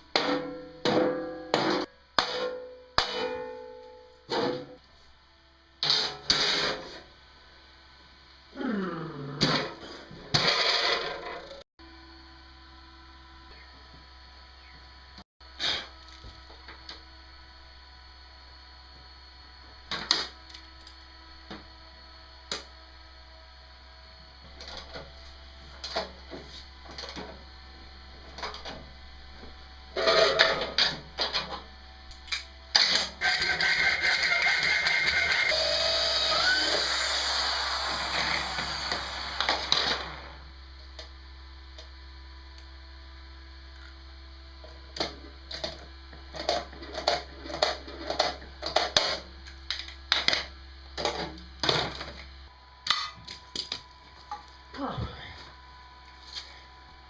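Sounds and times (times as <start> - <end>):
knocks and scrapes of tools: 30.0 - 31.6
electric drill running: 33.2 - 40.4.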